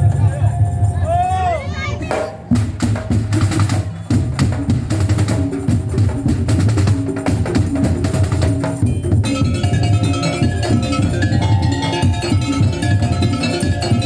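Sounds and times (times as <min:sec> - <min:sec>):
deep drum beats: 0:02.0 - 0:14.0
melody line: 0:09.2 - 0:14.0.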